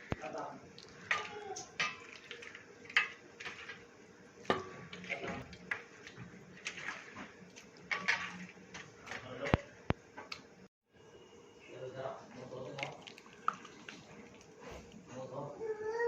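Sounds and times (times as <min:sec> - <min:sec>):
dishes and utensils clinking: 0:00.9 - 0:09.6.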